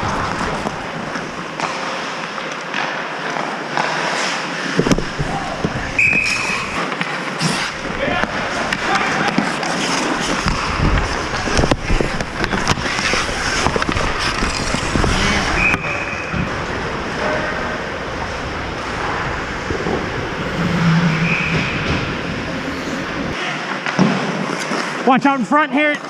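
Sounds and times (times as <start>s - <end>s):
skates scraping across ice: 0.0s - 25.0s
hockey sticks and puck clacking: 0.1s - 16.5s.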